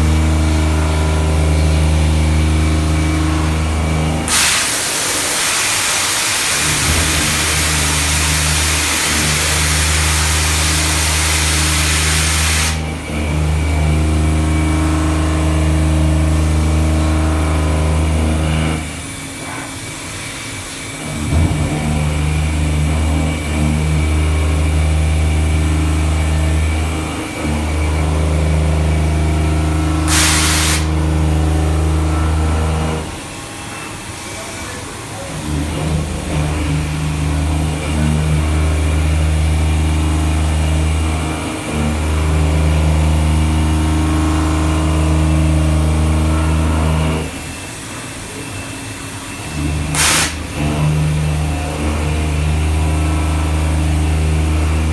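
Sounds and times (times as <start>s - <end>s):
milling machine hum: 0.0s - 54.9s
loud hiss: 4.2s - 12.9s, 30.0s - 31.0s, 49.9s - 50.7s.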